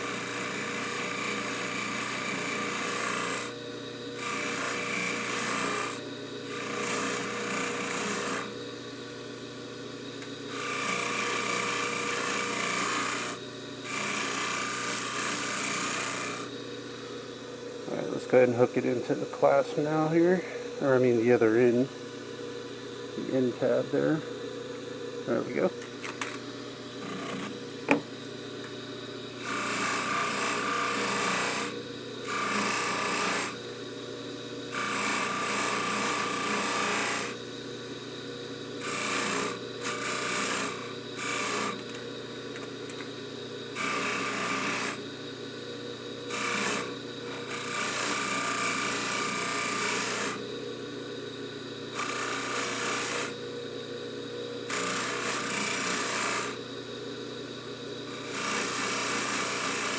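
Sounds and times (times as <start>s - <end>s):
metal rasping on buffing wheel: 0.0s - 3.5s, 4.2s - 8.5s, 10.5s - 16.6s, 17.9s - 21.9s, 27.0s - 28.0s, 29.3s - 33.6s, 34.7s - 37.4s, 38.8s - 42.0s, 43.7s - 45.0s, 46.3s - 50.5s, 51.9s - 53.4s, 54.6s - 56.6s, 58.0s - 59.9s
polishing buffer motor running: 0.0s - 59.9s.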